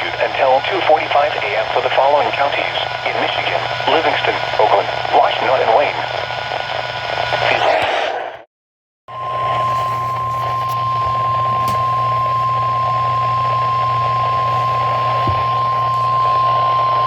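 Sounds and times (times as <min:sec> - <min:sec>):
weather radio alarm tone: 0:00.0 - 0:08.2, 0:09.1 - 0:17.0
radio hiss: 0:00.0 - 0:08.5, 0:12.0 - 0:17.0.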